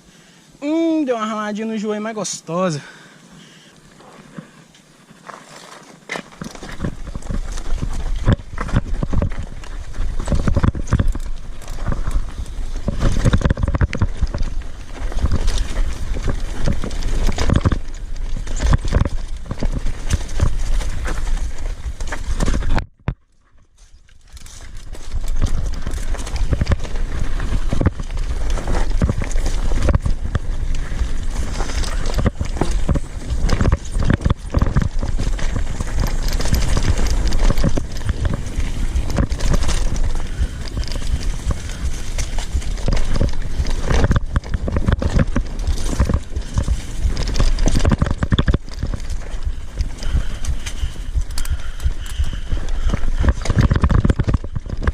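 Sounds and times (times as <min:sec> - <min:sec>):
mountain bike clattering: 0:04.1 - 0:54.9
steady low rumble: 0:24.3 - 0:54.7.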